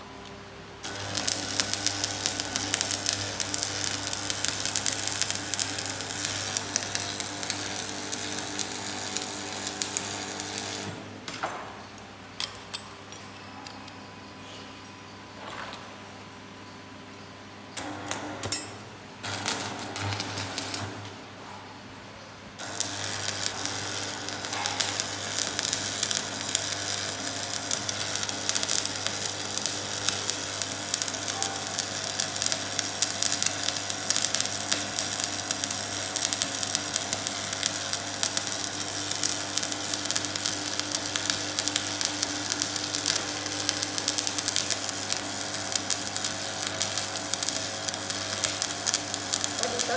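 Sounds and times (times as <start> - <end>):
low electrical hum: 0.0 - 49.9
welding arc crackling: 0.8 - 11.1, 19.2 - 21.1, 22.6 - 49.9.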